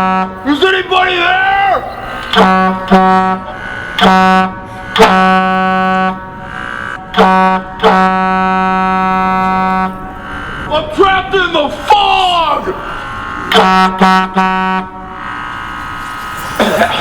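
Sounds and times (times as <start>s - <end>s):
air horn blasts: 0.0s - 17.0s.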